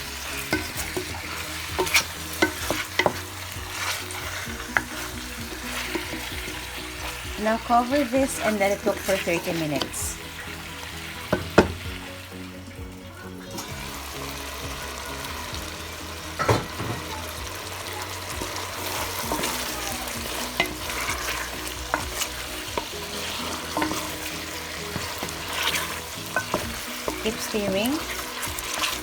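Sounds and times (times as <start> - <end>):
chicken sizzling in a frying pan: 0.0 - 29.0
soft background music: 0.0 - 29.0
utensil knocking against pan: 11.3 - 11.8.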